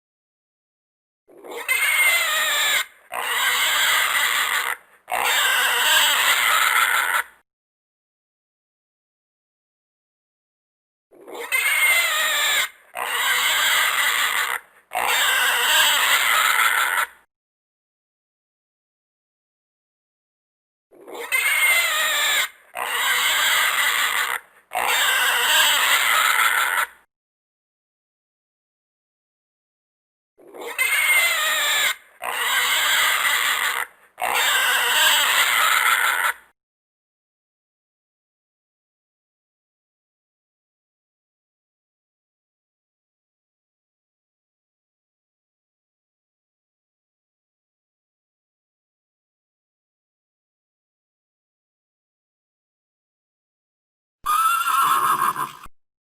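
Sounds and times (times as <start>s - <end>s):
harsh animal calls: 1.3s - 7.4s, 11.2s - 17.1s, 20.9s - 27.0s, 30.4s - 36.5s, 54.3s - 55.7s.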